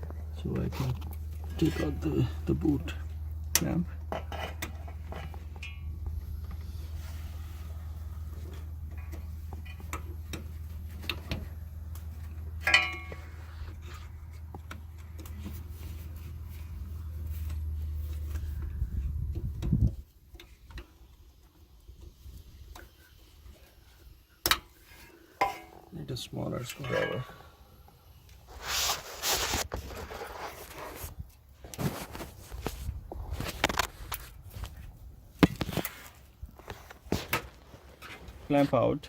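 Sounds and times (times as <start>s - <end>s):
steady low hum: 0.0s - 20.1s
ringing metal clink: 12.6s - 13.2s.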